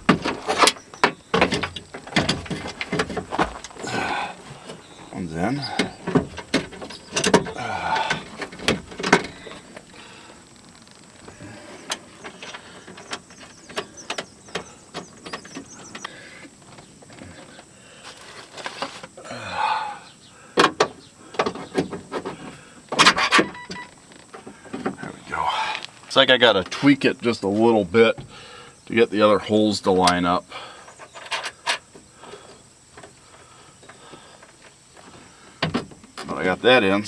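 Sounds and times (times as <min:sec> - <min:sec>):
metallic clicks knocks and scrapes: 0:05.7 - 0:09.7.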